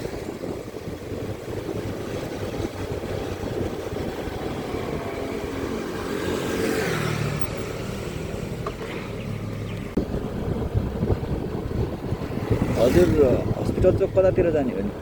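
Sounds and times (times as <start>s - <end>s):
road noise: 0.0s - 15.0s
motorcycle engine running: 0.1s - 13.6s.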